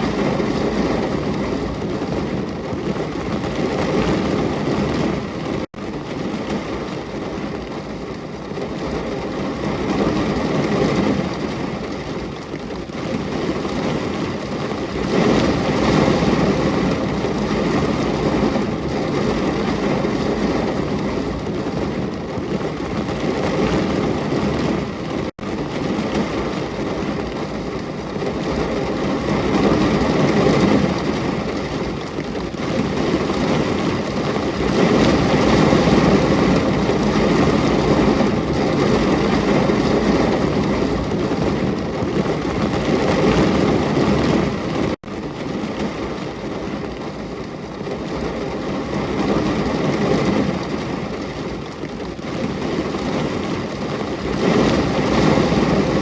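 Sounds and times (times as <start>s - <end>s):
heavy rain: 0.0s - 56.0s.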